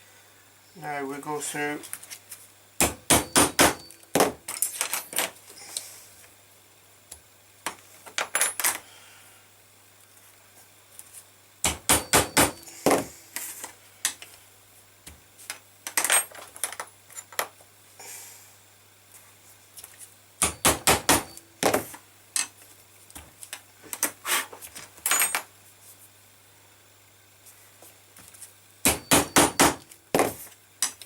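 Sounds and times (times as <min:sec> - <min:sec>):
mallet striking metal tool: 0:02.8 - 0:03.9, 0:28.9 - 0:29.8.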